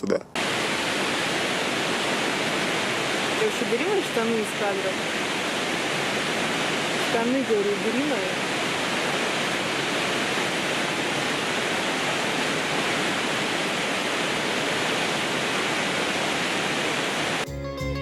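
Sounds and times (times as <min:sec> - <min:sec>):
fast-flowing water rushing: 0:00.4 - 0:17.4
acoustic guitar music: 0:17.4 - 0:18.0.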